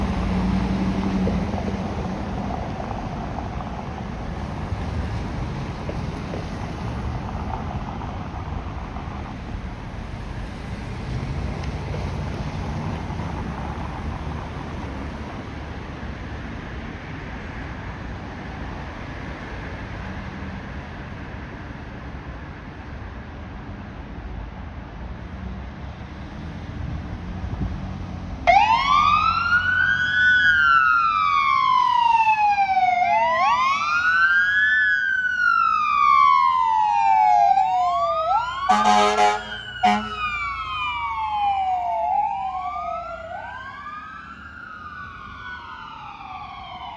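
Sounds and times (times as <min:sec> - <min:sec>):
fire engine siren wailing: 0:00.0 - 0:16.5, 0:28.4 - 0:46.9
wind rumble: 0:00.0 - 0:21.8
traffic rumble: 0:00.0 - 0:46.9
air horn blasts: 0:38.6 - 0:40.6.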